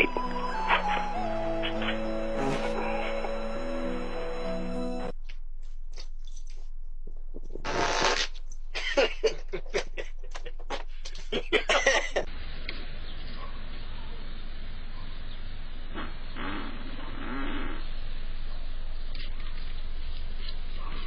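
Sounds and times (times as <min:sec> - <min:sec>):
person farting: 0:07.6 - 0:08.3.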